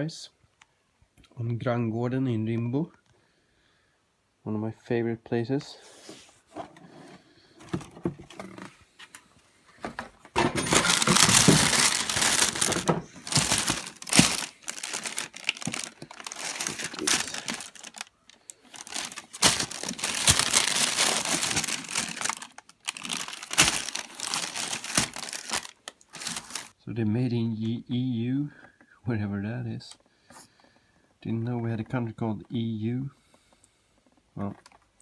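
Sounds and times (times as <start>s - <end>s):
packaging rustling: 9.7s - 26.8s
packaging crinkling and tearing: 10.4s - 26.8s.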